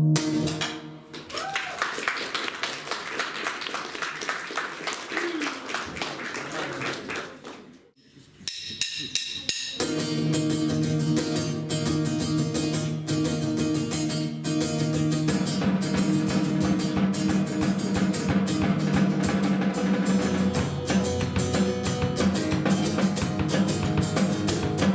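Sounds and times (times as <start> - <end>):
clicks and plucked guitar notes: 9.8 - 24.9
guitar playing held chords: 9.8 - 24.9
drum kit steady beat: 15.3 - 24.9.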